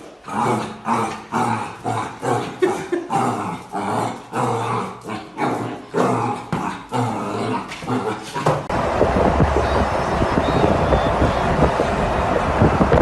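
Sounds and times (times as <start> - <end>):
dog growling and barking: 0.2 - 8.7.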